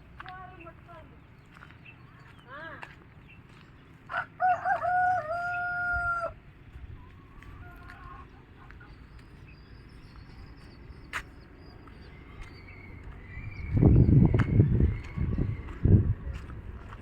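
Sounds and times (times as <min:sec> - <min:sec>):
rooster crowing: 0:04.1 - 0:06.4.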